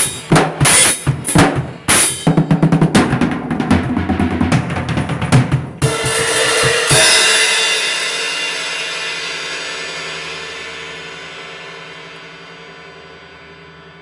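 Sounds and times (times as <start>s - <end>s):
drum kit hit: 0.0s - 12.0s
crash cymbal ringing: 5.9s - 14.0s.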